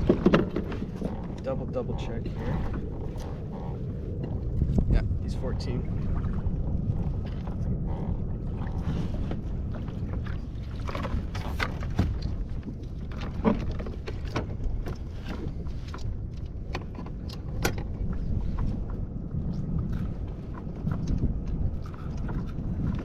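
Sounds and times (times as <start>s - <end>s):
fishing gear clicking and knocking: 0.0s - 1.5s
steady low rumble: 0.0s - 23.0s.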